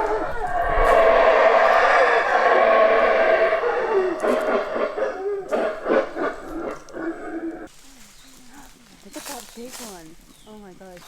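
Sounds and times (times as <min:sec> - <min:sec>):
howler monkeys howling: 0:00.0 - 0:07.7.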